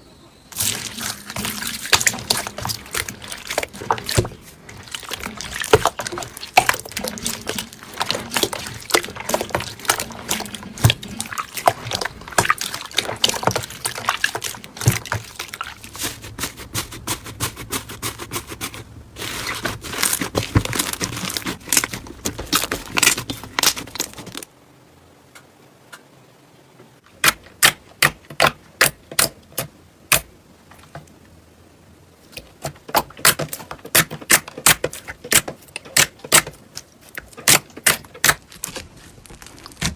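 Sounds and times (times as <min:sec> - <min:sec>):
slime crackling and popping: 0:00.5 - 0:16.3, 0:19.2 - 0:24.5, 0:37.1 - 0:39.9.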